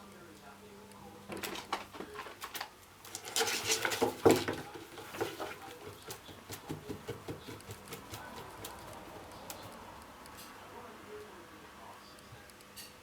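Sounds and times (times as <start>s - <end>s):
cat paws pattering on exercise wheel: 1.3s - 10.1s.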